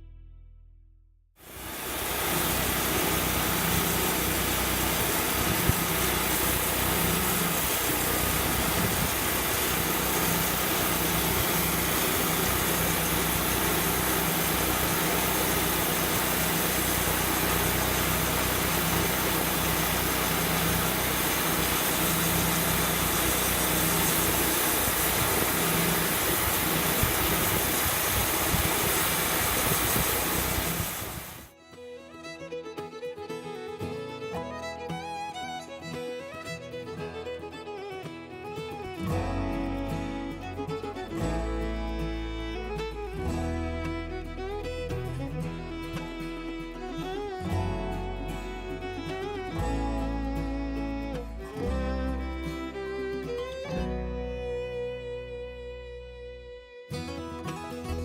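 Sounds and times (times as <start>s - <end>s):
sawmill engine running: 1.4s - 31.5s.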